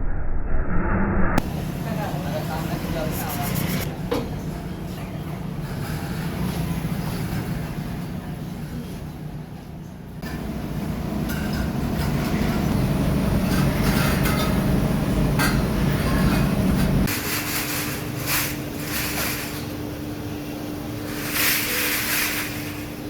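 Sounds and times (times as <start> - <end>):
machinery low rumble: 0.0 - 21.1
metal scraping: 1.4 - 3.9, 5.5 - 8.2, 11.2 - 19.8, 21.0 - 23.0
steady machine hum: 1.4 - 23.0.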